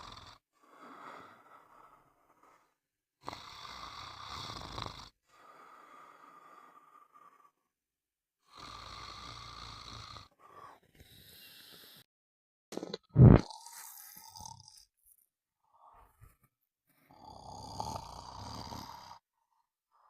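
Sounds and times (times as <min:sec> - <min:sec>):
person snoring: 0:03.2 - 0:07.6, 0:08.5 - 0:12.0, 0:12.8 - 0:14.9, 0:17.1 - 0:19.3.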